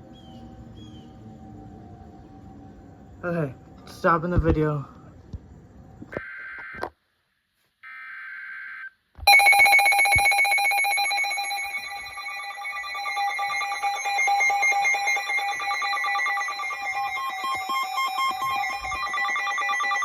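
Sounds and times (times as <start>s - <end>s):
loud steady attention tone: 9.3s - 20.0s
screeching data burst: 11.4s - 20.0s.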